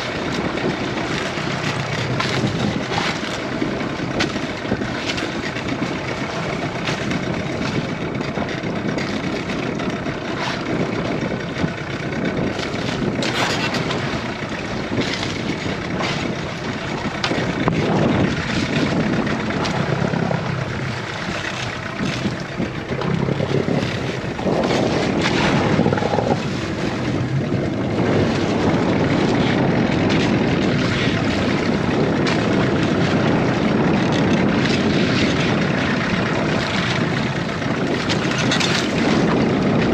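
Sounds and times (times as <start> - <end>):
boat engine running: 0.0 - 39.9
dense rushing noise: 5.7 - 35.0.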